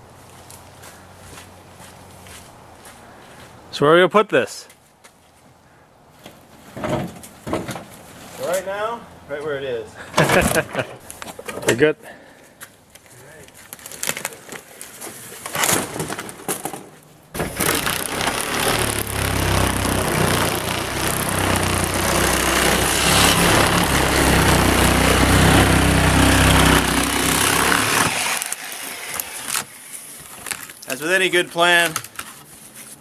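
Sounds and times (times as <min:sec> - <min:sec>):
engine running: 0:17.4 - 0:28.6.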